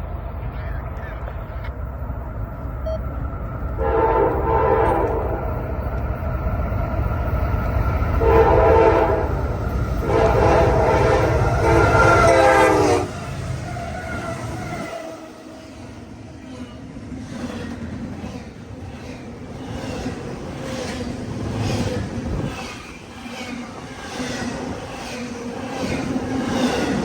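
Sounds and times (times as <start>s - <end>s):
low train rumble: 0.0s - 27.0s
locomotive air horn blasts: 3.8s - 5.6s, 8.2s - 13.2s
wind noise: 21.1s - 23.2s.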